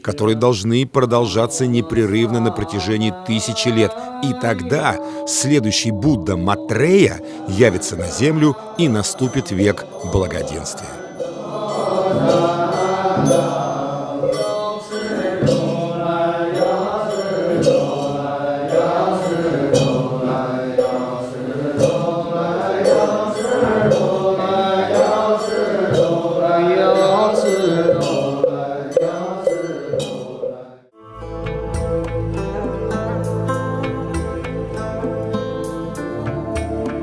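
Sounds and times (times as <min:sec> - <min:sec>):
monks chanting: 0:00.0 - 0:30.9
rhythmic knocks: 0:01.2 - 0:30.8.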